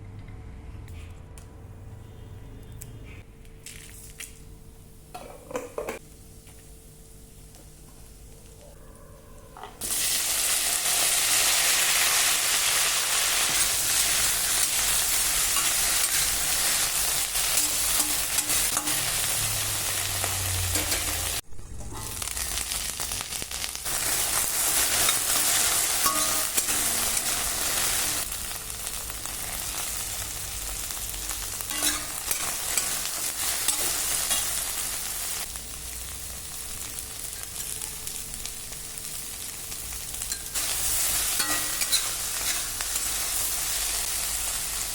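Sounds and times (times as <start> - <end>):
food sizzling in hot oil: 9.8 - 44.9.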